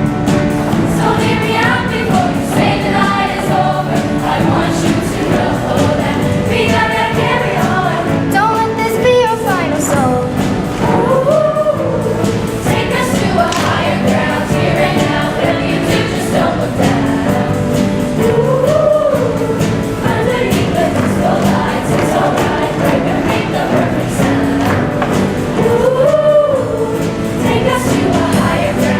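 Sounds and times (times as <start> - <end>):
choir singing with instruments: 0.0 - 28.9.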